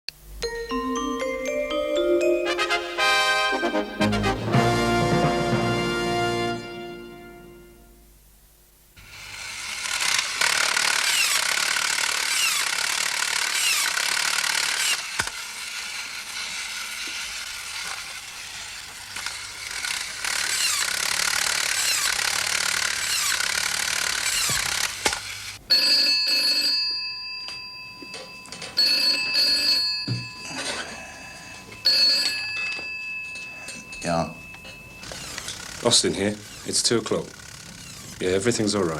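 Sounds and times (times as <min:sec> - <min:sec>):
telephone ringing: 0:25.7 - 0:37.0.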